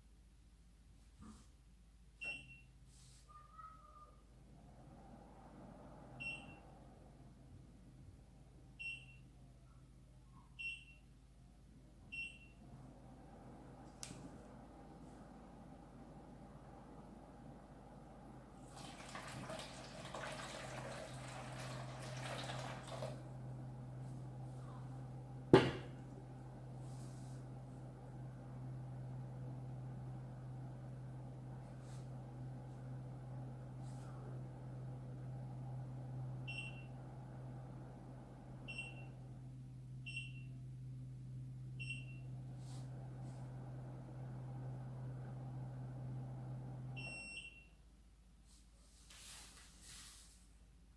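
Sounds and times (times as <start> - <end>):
low steady hum: 3.6 - 50.9
water pouring and splashing: 18.6 - 23.2.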